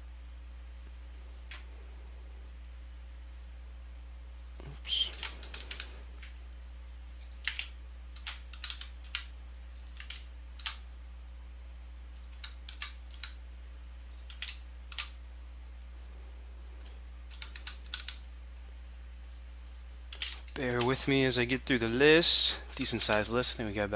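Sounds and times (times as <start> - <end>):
steady low hum: 0.0 - 23.9
computer keyboard typing: 5.1 - 6.3, 7.2 - 10.8, 12.1 - 13.4, 14.1 - 15.2, 17.3 - 18.3, 19.6 - 20.6.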